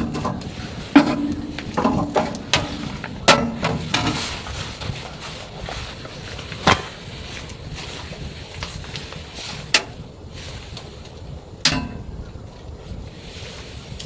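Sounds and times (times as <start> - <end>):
low background noise: 0.0 - 14.0
sharp knocks: 1.0 - 4.4.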